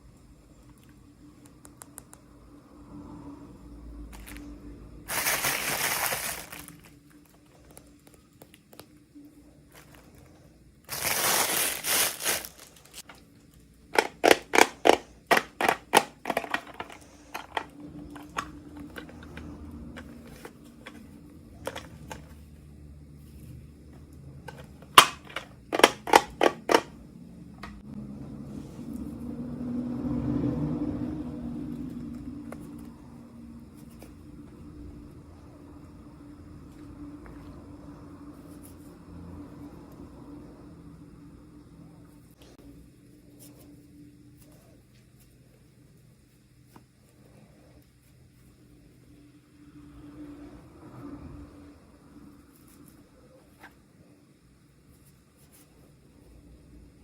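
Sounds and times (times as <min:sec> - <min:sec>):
wrapper crinkling: 0:05.1 - 0:07.8, 0:10.9 - 0:13.1.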